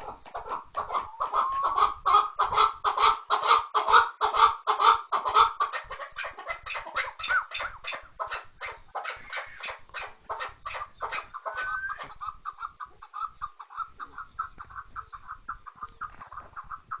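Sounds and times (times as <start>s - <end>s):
partridge clucking call: 0.0s - 17.0s.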